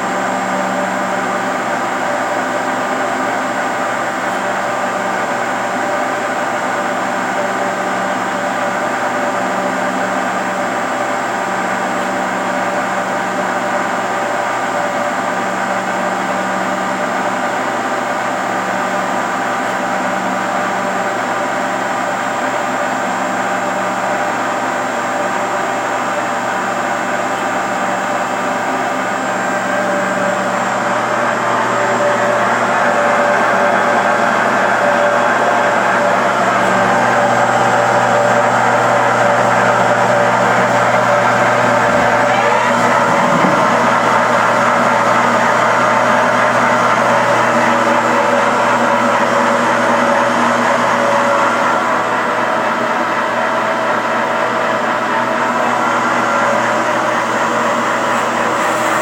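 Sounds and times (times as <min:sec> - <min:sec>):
lathe machine hum and whine: 0:00.0 - 0:59.0
hiss: 0:58.0 - 0:59.0.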